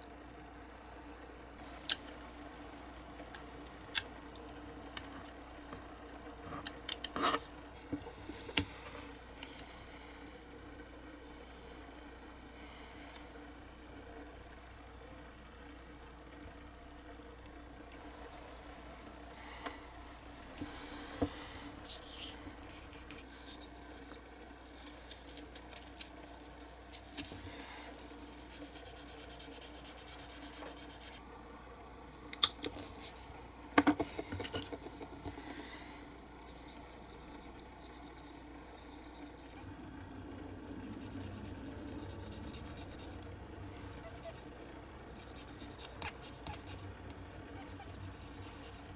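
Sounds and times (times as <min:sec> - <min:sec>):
low steady hum: 0:00.0 - 0:48.9.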